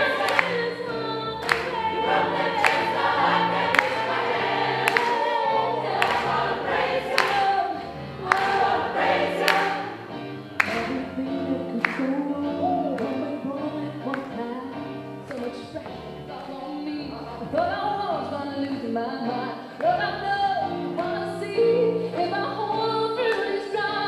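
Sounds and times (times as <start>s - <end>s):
gospel choir singing: 0.0s - 11.9s.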